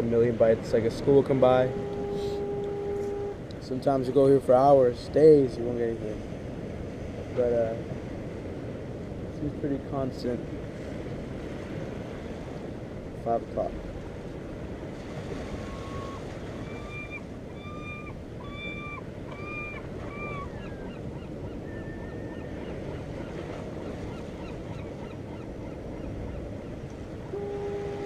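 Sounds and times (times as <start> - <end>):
steady low tone: 0.0 - 3.8
ocean surf washing: 0.0 - 28.0
bird honking calls: 0.9 - 3.5, 15.5 - 28.0.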